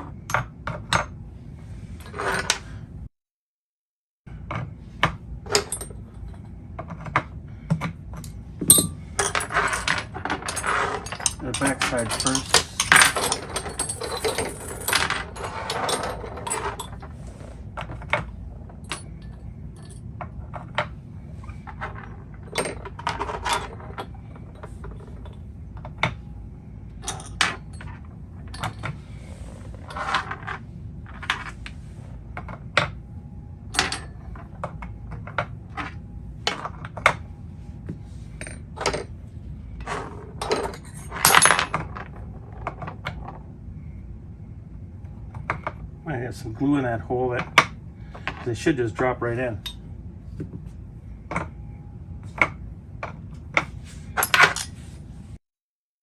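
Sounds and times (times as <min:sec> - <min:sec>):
screwdrivers clicking and clinking: 0:07.8 - 0:17.0.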